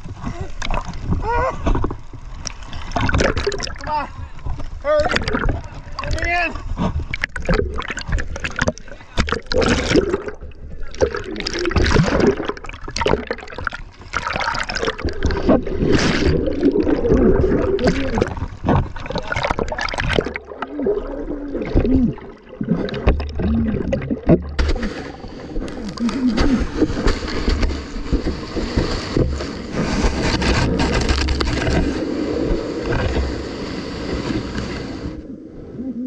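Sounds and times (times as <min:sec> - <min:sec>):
gurgling water: 0:00.0 - 0:36.0
ocean surf splashing: 0:24.6 - 0:36.0.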